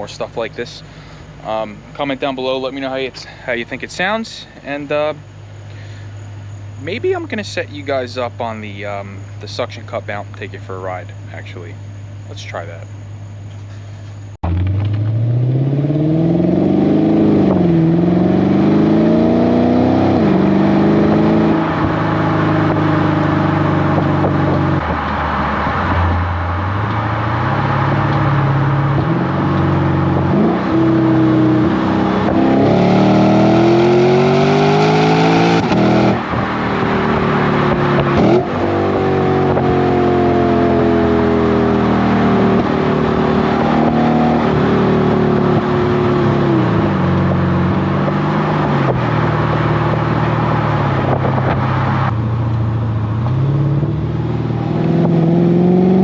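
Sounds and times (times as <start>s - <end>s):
car engine accelerating: 14.4s - 56.0s.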